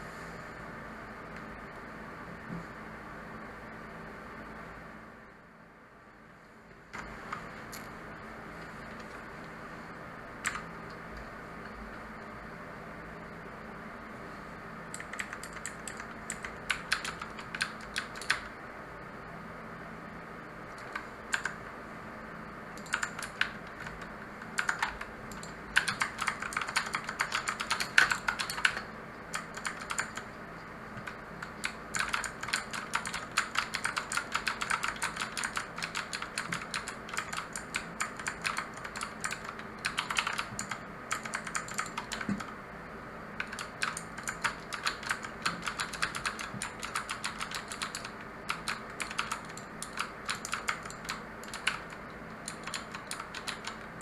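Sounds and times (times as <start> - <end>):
mechanical keyboard typing: 10.4 - 10.7, 14.9 - 18.5, 20.8 - 21.7, 22.8 - 30.3, 31.0 - 42.6, 43.4 - 54.0.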